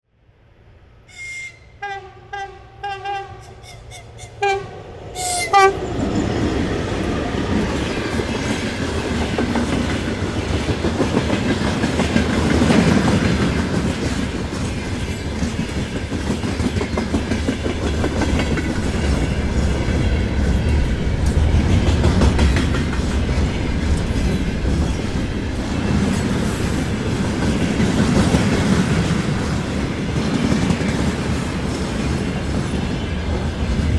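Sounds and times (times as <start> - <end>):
locomotive horn blasts: 1.1 - 5.9
train rumble: 1.2 - 33.9
wheels clacking over rail joints: 5.6 - 33.9.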